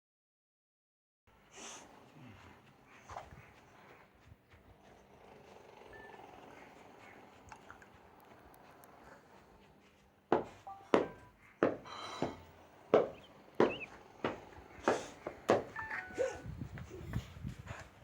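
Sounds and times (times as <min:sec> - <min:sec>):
phone notification tones: 0:10.7 - 0:11.3, 0:15.8 - 0:16.4.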